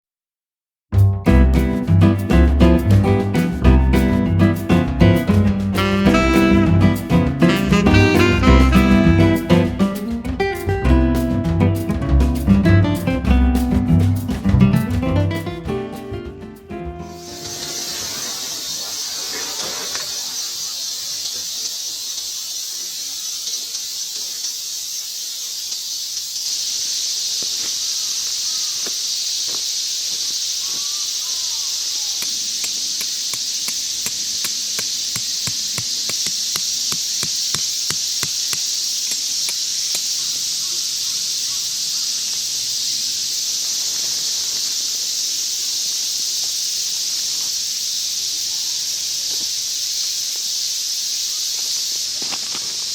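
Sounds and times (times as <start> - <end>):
quick clicks and taps: 9.8 - 17.0, 32.2 - 40.1
insects chorus: 17.0 - 52.9.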